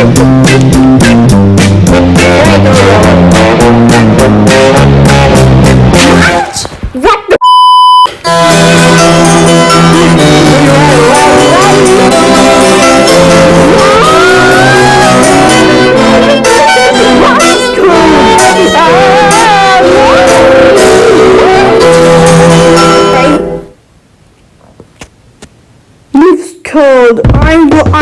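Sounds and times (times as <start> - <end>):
held chords: 0.0 - 6.4, 8.2 - 23.8.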